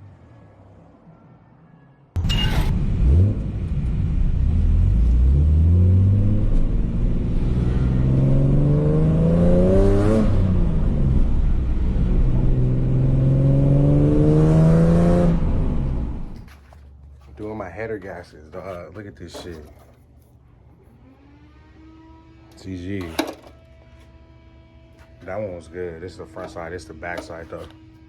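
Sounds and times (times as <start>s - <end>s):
car engine accelerating hard: 2.7s - 16.5s.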